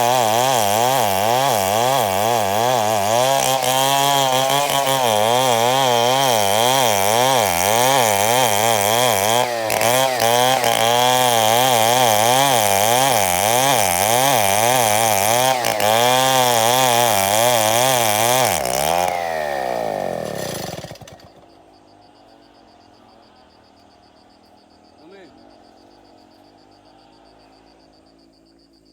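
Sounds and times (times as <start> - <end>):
chainsaw cutting wood: 0.0 - 21.6.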